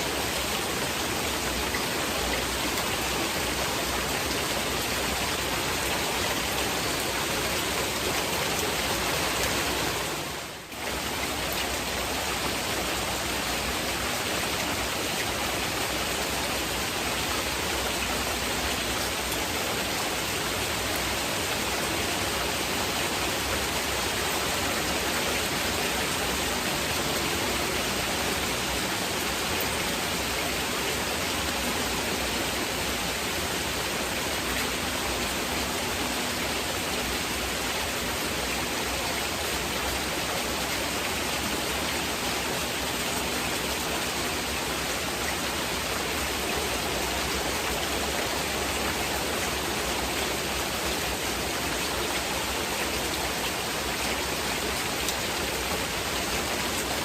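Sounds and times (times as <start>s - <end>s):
heavy rain hiss: 0.0s - 57.0s.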